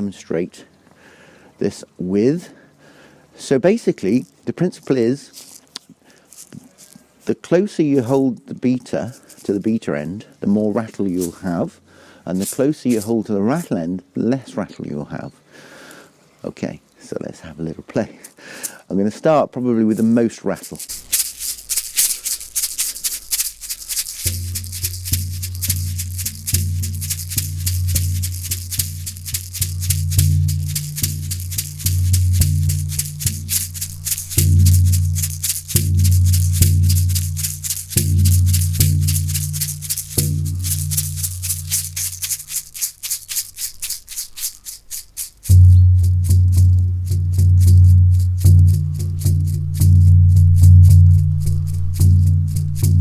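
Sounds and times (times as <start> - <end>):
rattle shaking: 5.2 - 7.2, 9.0 - 9.7, 10.7 - 11.7, 12.3 - 13.8, 19.9 - 53.0
deep ringing drum strokes: 45.5 - 53.0.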